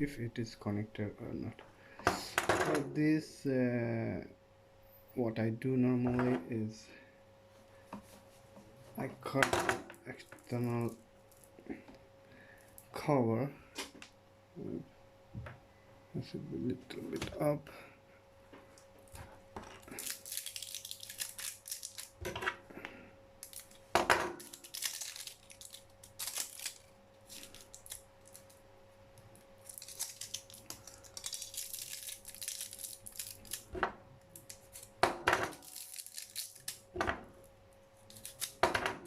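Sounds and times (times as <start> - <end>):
plastic rustling and scraping: 23.4 - 28.6.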